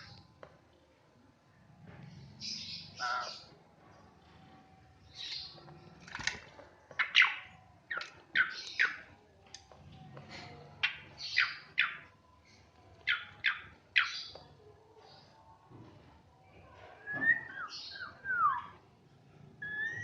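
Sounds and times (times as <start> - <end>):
starling calling: 2.4 - 3.5.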